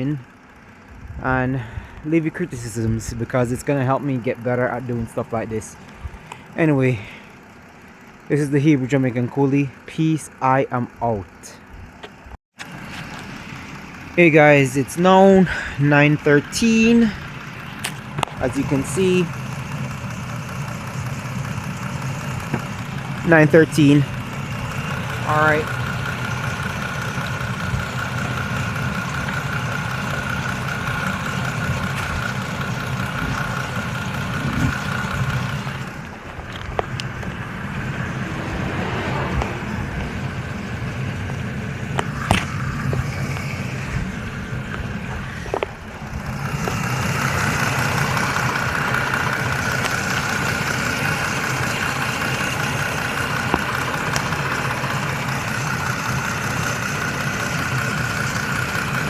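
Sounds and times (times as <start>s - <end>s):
car engine idling: 0.0s - 59.0s
high whir: 36.7s - 48.8s.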